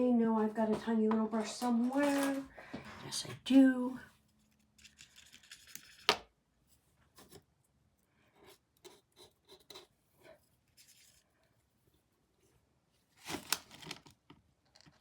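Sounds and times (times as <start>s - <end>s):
paintbrush and tools handled: 0.7s - 2.5s.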